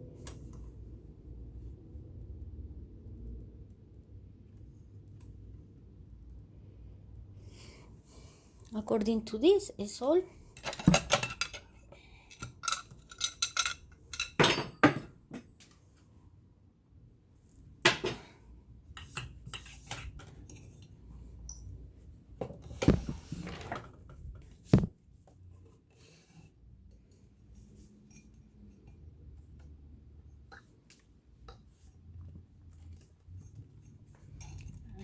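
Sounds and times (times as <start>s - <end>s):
metal clinks and knocks: 10.6s - 15.5s.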